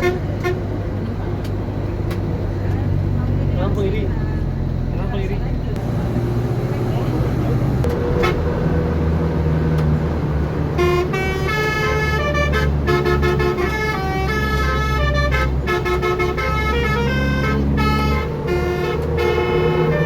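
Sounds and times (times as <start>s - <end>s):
bus engine droning: 0.0s - 20.0s
musical air horn melody: 10.8s - 20.0s.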